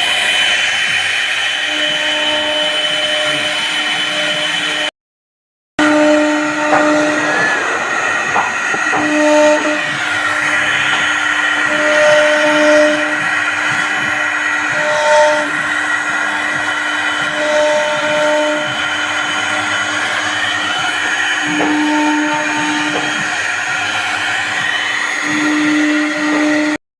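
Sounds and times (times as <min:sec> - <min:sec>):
router spindle whine: 0:05.8 - 0:26.8.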